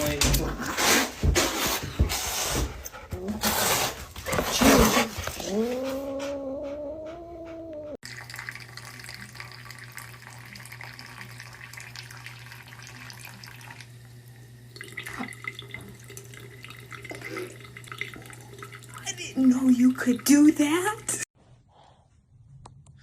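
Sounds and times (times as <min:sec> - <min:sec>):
water running from a tap: 0:08.0 - 0:21.3.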